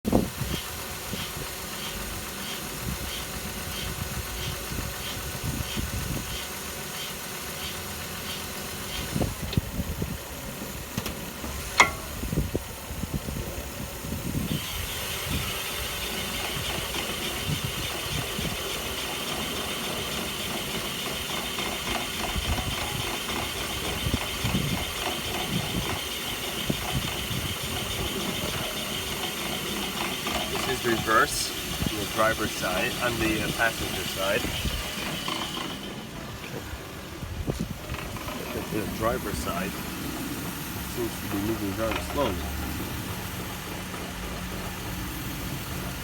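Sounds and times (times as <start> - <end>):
car engine idling: 0.1 - 46.0
steady high hiss: 25.5 - 46.0.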